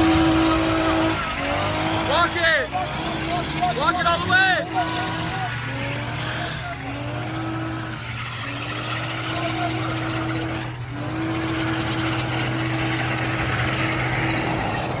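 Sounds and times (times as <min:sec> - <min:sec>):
car engine at high revs: 0:00.0 - 0:15.0
tyres spinning: 0:00.0 - 0:15.0.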